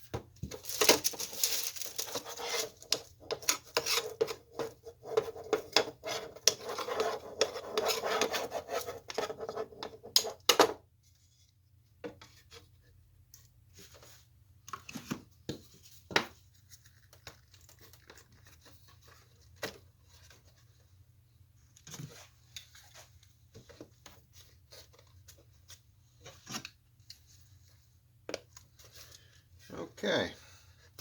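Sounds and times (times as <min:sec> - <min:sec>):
rustling: 0:00.5 - 0:02.9.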